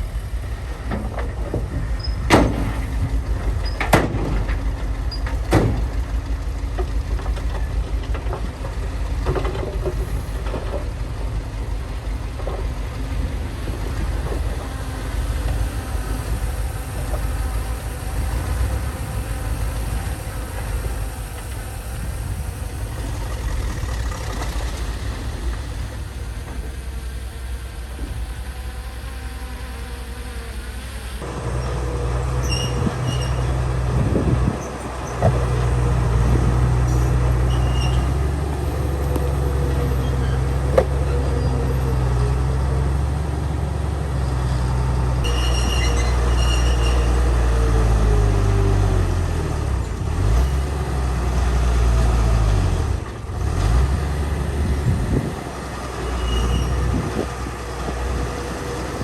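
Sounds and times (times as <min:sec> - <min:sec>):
diesel machinery engine drone: 0:00.0 - 0:59.0
short high squeaks: 0:32.4 - 0:33.6, 0:36.9 - 0:41.8, 0:45.2 - 0:47.8, 0:56.0 - 0:57.3.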